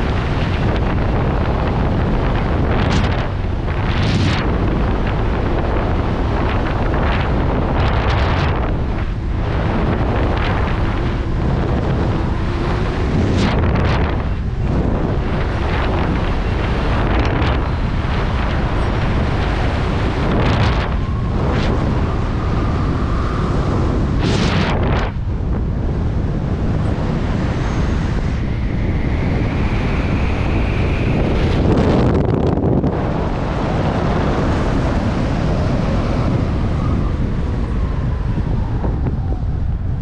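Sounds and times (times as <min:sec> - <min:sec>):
wind rushing across microphone: 0:00.0 - 0:40.0.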